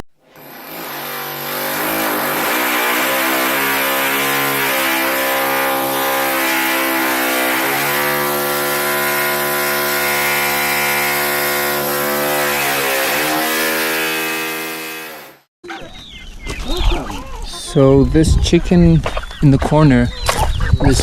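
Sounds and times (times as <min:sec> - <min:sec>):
motor running: 0:00.3 - 0:15.5.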